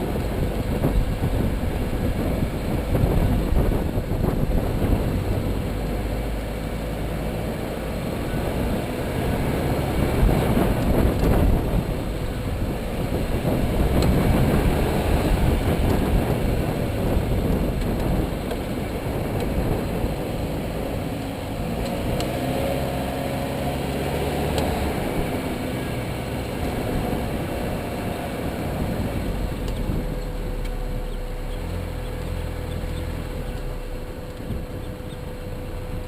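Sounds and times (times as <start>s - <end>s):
car engine hum: 0.0s - 36.0s
road and tyre rumble: 0.0s - 36.0s.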